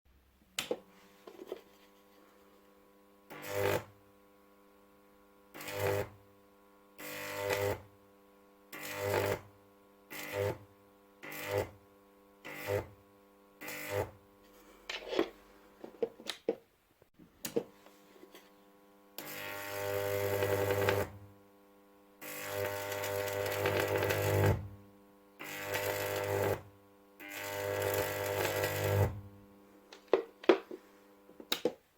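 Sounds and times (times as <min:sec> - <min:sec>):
high-voltage arcs buzzing: 0:03.3 - 0:04.0, 0:05.5 - 0:06.2, 0:07.0 - 0:07.9, 0:08.7 - 0:09.5, 0:10.1 - 0:11.8, 0:12.4 - 0:13.0, 0:13.6 - 0:14.2, 0:19.2 - 0:21.4, 0:22.2 - 0:24.8, 0:25.4 - 0:29.4.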